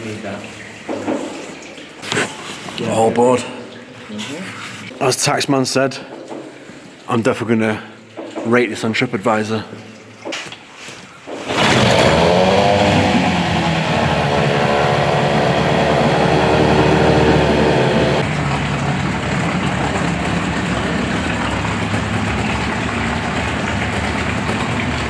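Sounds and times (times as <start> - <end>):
boat motor running: 11.5 - 18.2.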